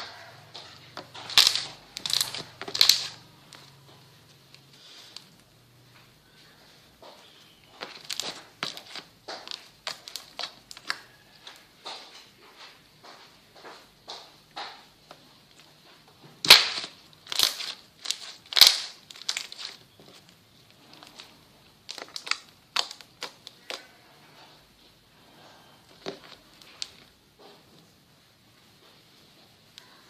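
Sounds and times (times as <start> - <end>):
slime crackling pops: 16.4 - 19.8, 21.9 - 23.8.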